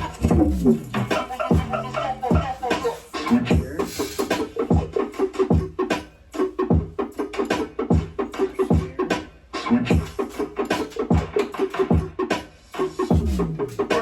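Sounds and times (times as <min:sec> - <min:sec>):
electronic bass music: 0:00.0 - 0:05.9, 0:13.0 - 0:14.0
scratch-like sounds: 0:00.0 - 0:06.5, 0:08.2 - 0:12.0, 0:12.7 - 0:14.0.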